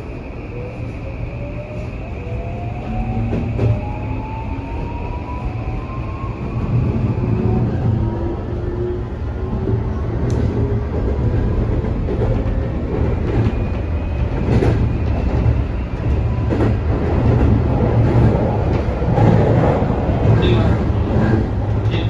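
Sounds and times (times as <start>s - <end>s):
train wheels rumbling on rail: 0.0s - 22.0s.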